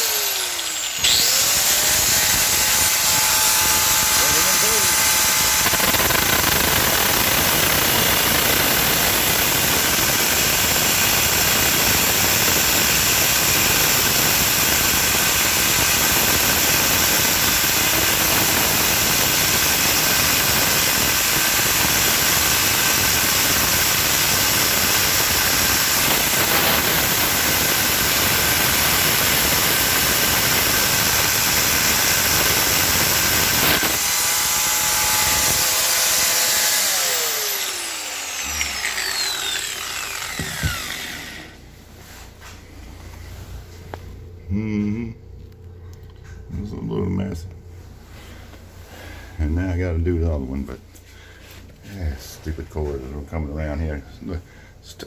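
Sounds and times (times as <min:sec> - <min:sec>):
angle grinder cutting metal: 0:00.0 - 0:41.7.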